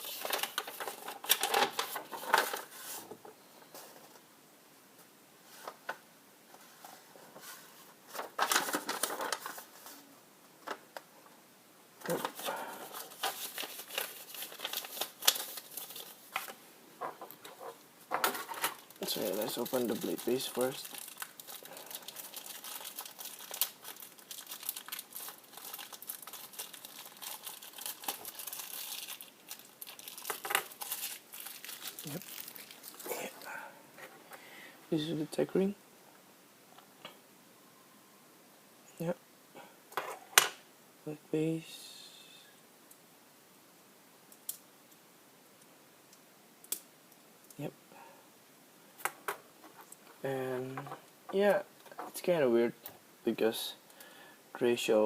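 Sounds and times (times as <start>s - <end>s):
paper and plastic rustling: 0.0s - 4.2s, 6.5s - 10.8s, 12.0s - 33.4s.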